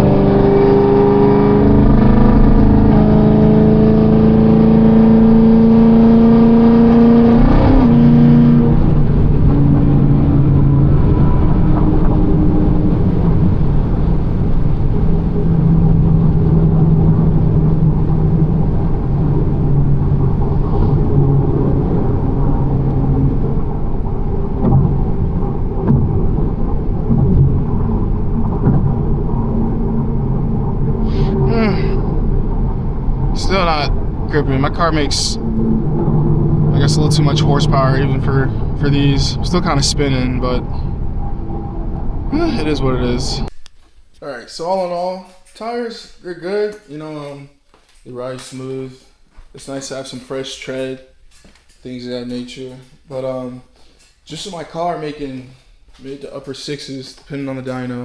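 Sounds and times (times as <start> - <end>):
car engine accelerating hard: 0.0 - 43.5.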